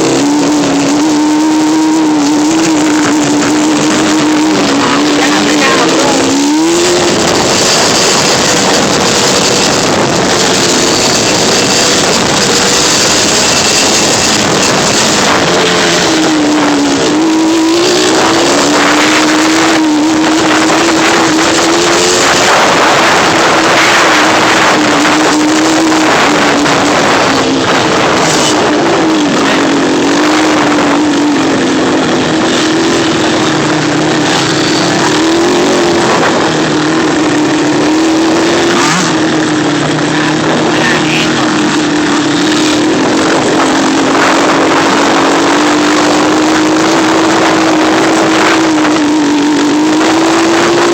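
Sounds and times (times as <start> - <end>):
dense rush of noise: 0.0 - 50.9
off-road vehicle engine revving: 0.0 - 50.9.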